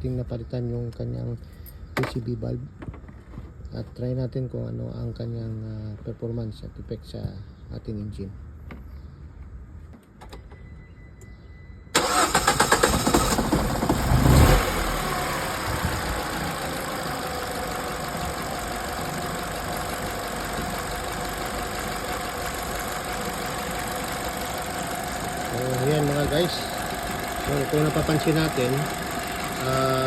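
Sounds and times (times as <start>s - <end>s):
car engine revving and idling: 12.0s - 30.0s
car starter cranking: 12.0s - 30.0s.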